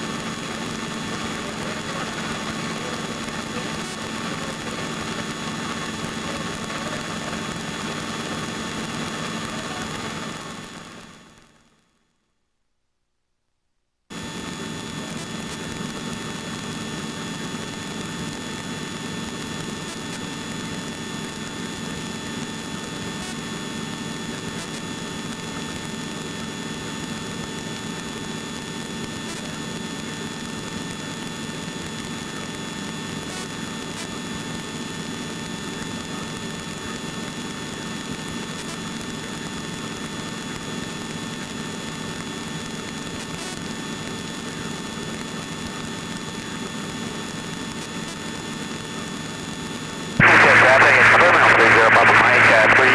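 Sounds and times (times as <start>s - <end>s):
helicopter engine and rotor drone: 0.0s - 11.2s, 50.2s - 52.9s
high whine: 50.2s - 52.9s.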